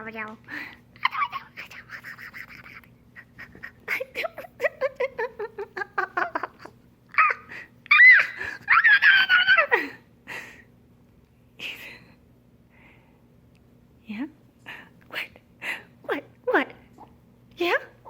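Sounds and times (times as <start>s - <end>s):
woman squealing: 7.2s - 9.8s.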